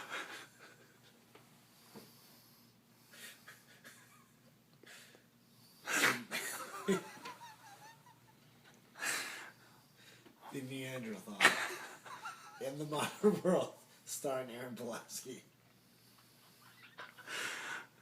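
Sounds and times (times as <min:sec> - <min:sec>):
faint breaths: 0:00.0 - 0:03.8, 0:07.8 - 0:10.6, 0:15.6 - 0:18.0.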